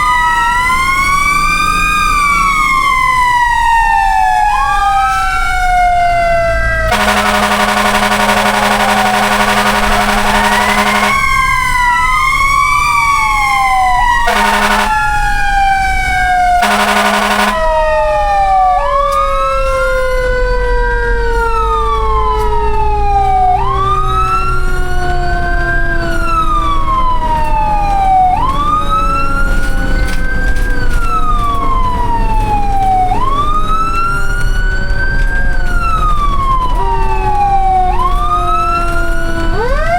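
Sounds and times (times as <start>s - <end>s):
fire truck sirens: 0.0s - 39.9s
horn blasts: 6.9s - 12.1s, 13.4s - 17.8s.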